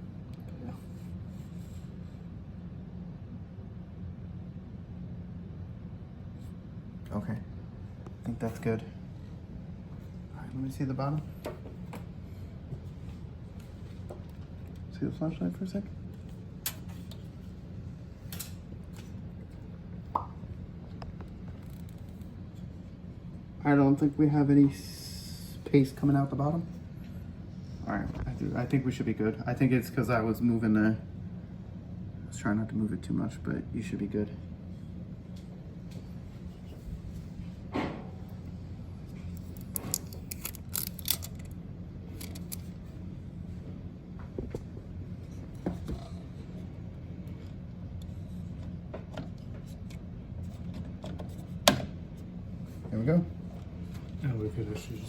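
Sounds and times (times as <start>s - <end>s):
low room hum: 0.0s - 55.0s
small parts clicking and rattling: 39.3s - 42.8s.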